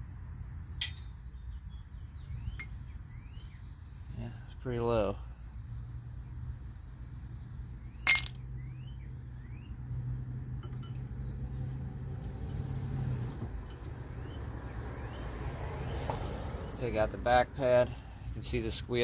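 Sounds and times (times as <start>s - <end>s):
metal parts clinking: 8.1s - 8.4s.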